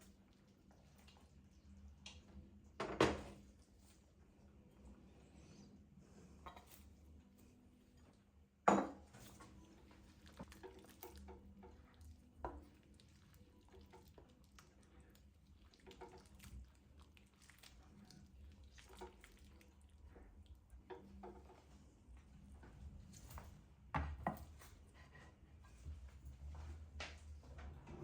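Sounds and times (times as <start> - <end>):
dishes clattering: 8.7 - 9.2
dishes and utensils clinking: 8.7 - 9.5.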